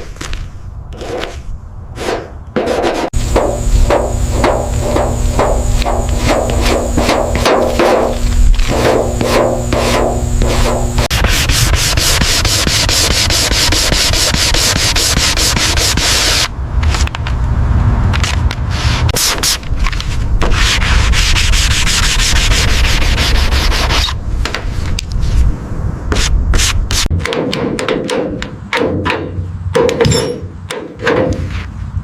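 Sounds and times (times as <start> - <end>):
sanding scratchy strokes: 2.0 - 16.5, 20.4 - 24.2.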